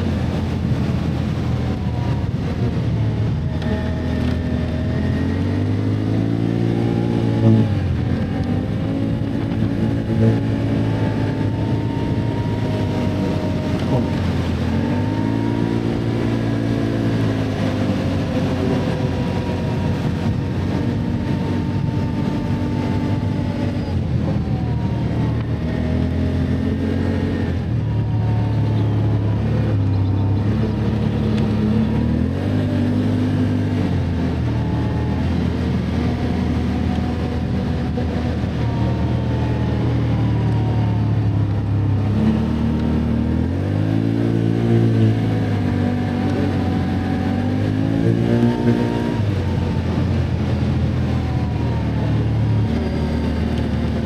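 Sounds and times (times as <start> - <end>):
atv engine revving: 0.0 - 54.0.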